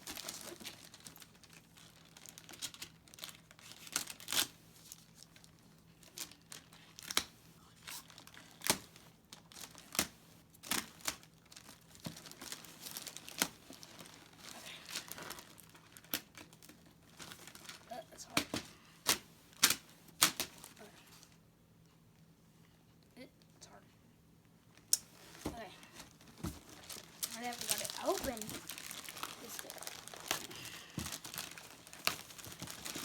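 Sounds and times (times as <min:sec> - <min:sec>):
packaging tearing and crinkling: 0:00.0 - 0:07.3, 0:08.0 - 0:17.9, 0:26.4 - 0:33.0.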